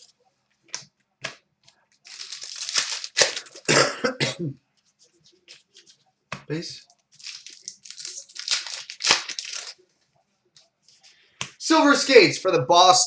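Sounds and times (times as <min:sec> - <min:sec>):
foil wrapper crinkling and tearing: 0:02.0 - 0:03.7, 0:07.1 - 0:09.8
person coughing: 0:03.6 - 0:04.6.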